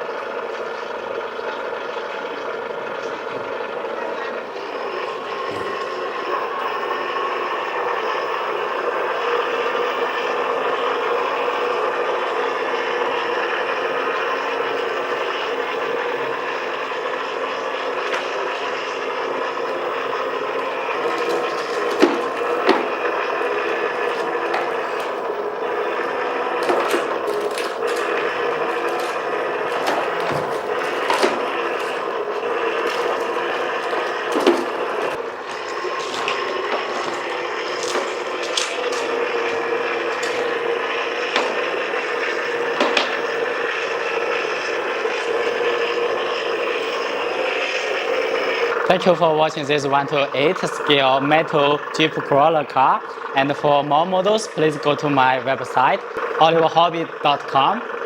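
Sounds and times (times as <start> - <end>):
toy car engine drone: 0.0 - 58.0.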